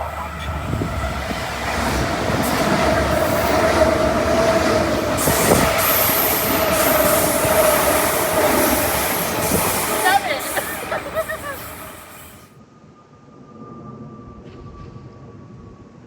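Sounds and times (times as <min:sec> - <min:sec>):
train wheels rumbling on rails: 0:00.0 - 0:12.5
hissing rush of train: 0:00.0 - 0:12.6
high train whine: 0:00.0 - 0:16.0.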